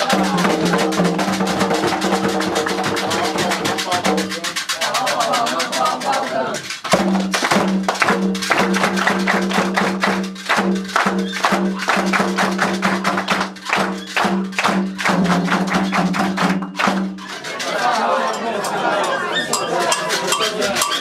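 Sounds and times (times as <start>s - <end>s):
drums: 0.0s - 18.2s
wood block click: 19.5s - 21.0s.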